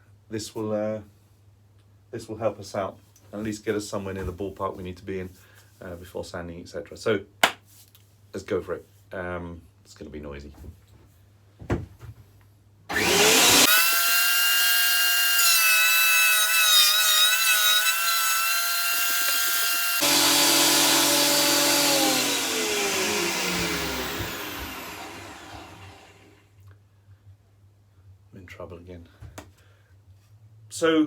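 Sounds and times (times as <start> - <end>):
planer-jointer motor whining: 12.9 - 26.4.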